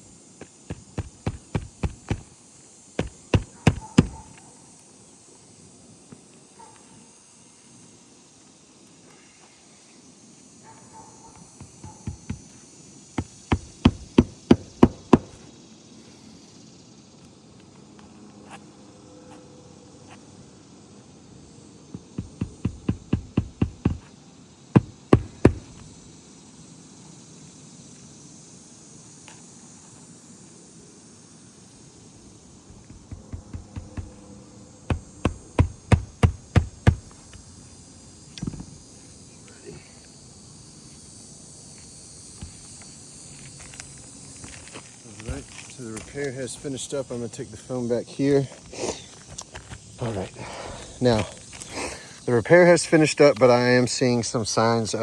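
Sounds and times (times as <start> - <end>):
hammer striking roofing nails: 0.6 - 2.3, 3.0 - 4.3, 11.6 - 12.5, 13.2 - 15.4, 22.0 - 24.1, 24.8 - 25.8, 32.7 - 34.2, 34.9 - 37.1.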